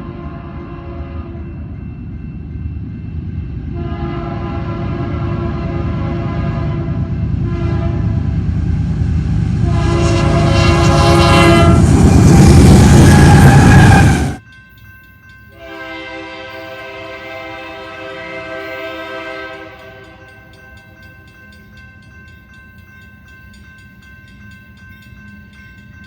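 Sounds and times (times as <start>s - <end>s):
passing train rumble: 0.0s - 26.0s
locomotive air horn chord: 3.7s - 8.3s, 9.6s - 12.0s, 12.8s - 14.4s, 15.6s - 20.2s
quieter horn steady chord: 3.7s - 8.3s, 9.6s - 12.0s, 15.6s - 20.4s.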